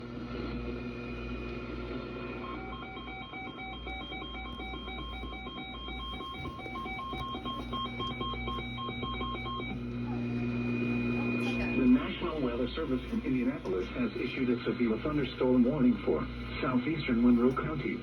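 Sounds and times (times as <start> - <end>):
steady hum: 0.0 - 18.0
radio hiss: 10.4 - 18.0.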